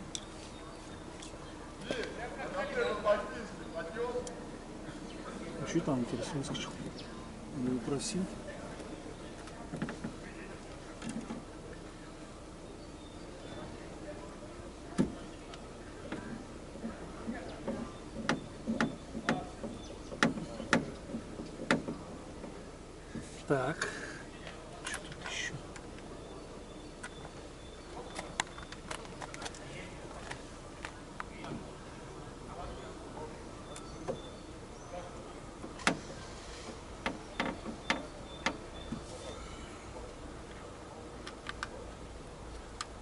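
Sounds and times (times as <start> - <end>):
clicks and knocks on car door: 17.3 - 22.1, 37.0 - 39.0.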